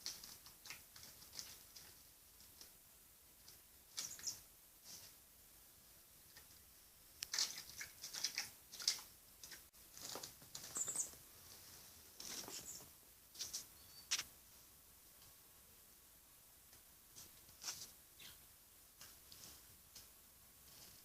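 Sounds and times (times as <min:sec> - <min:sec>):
bird rustling and scratching: 0:00.0 - 0:02.8, 0:03.4 - 0:05.2, 0:07.2 - 0:14.3, 0:17.1 - 0:18.0, 0:19.0 - 0:21.0
high bird squeak: 0:13.8 - 0:14.2.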